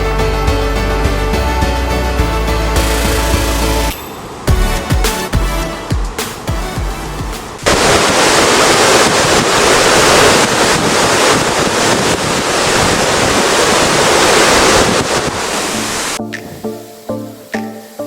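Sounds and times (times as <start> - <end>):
music: 0.0 - 7.7, 15.8 - 18.0
ocean waves breaking: 2.8 - 16.9
wind buffeting microphone: 7.5 - 16.8.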